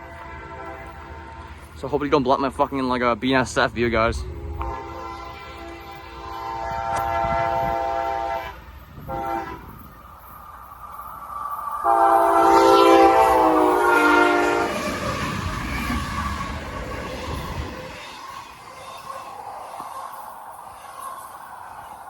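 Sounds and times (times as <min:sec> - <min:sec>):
locomotive air horn: 0:00.0 - 0:01.6, 0:04.3 - 0:09.9, 0:11.8 - 0:19.4
train rumbling by: 0:00.0 - 0:22.0.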